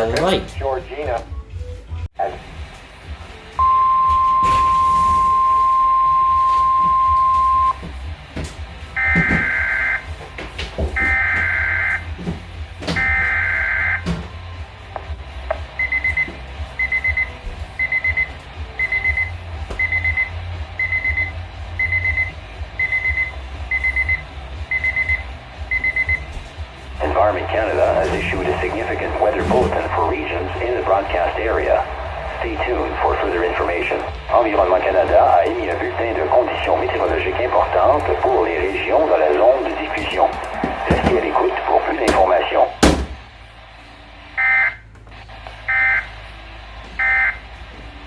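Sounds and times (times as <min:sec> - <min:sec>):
steady warning tone: 0:27.0 - 0:42.8.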